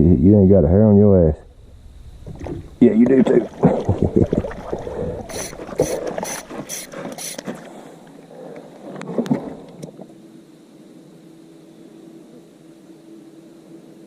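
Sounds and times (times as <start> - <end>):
faint steady hum: 0.0 - 14.0
short scraping strokes: 5.3 - 7.8.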